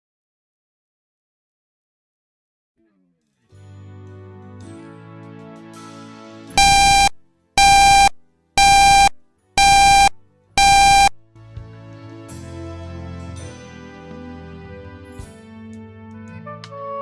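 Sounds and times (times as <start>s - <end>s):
loud buzzing alert beeps: 6.6s - 11.2s.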